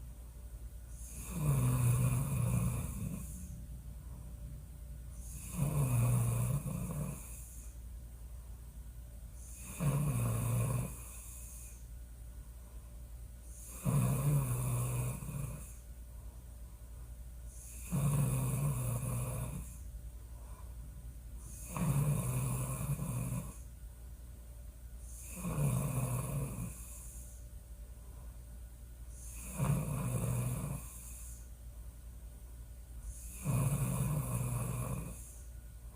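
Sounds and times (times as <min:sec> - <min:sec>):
woman snoring loudly: 0:01.0 - 0:03.5, 0:05.2 - 0:07.7, 0:09.4 - 0:11.8, 0:13.5 - 0:15.8, 0:17.5 - 0:19.8, 0:21.4 - 0:23.6, 0:25.1 - 0:27.3, 0:29.2 - 0:31.5, 0:33.1 - 0:35.5.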